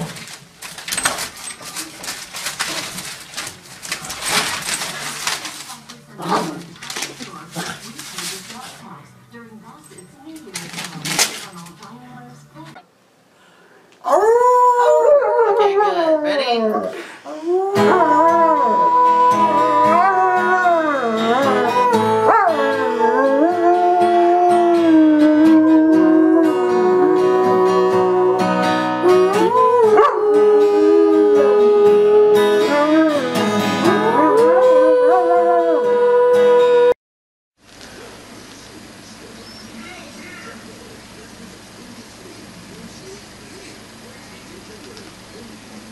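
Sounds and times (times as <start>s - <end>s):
music: 8.2s - 12.7s, 17.8s - 36.9s
dog howling: 14.0s - 37.0s.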